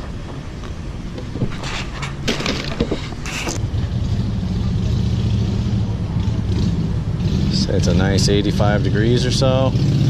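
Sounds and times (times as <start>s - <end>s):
short knocks and clatters: 1.1s - 3.6s.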